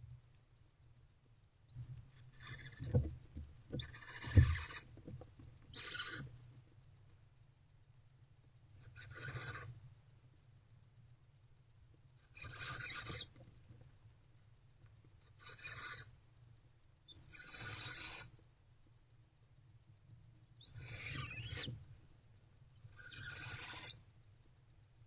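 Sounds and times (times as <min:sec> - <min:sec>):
owlets hissing begging calls: 0:20.7 - 0:21.7.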